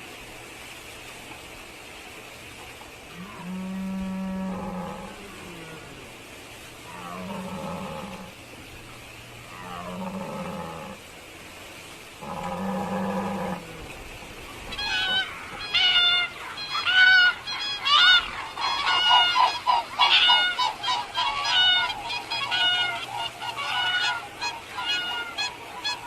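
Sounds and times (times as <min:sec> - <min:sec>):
low drawn-out calls: 0:03.1 - 0:26.0
flock of birds calling: 0:12.2 - 0:26.0.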